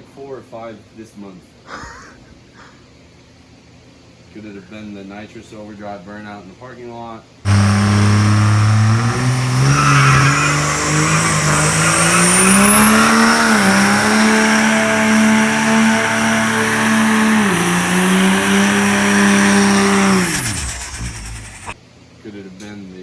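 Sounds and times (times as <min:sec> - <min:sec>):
diesel engine revving high: 0:07.5 - 0:21.8
tires squealing: 0:07.5 - 0:21.8.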